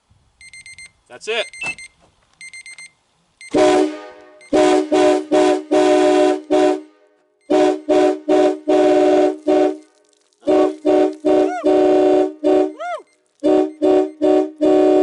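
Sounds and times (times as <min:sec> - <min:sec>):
phone alarm beeping: 0:00.4 - 0:03.6
train horn blasts: 0:03.6 - 0:09.8, 0:10.5 - 0:12.8, 0:13.4 - 0:15.0.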